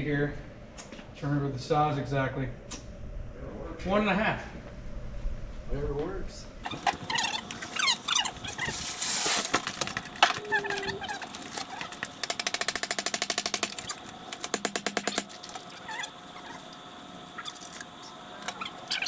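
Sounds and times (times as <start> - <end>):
ratchet clicking rapidly: 6.6 - 16.6.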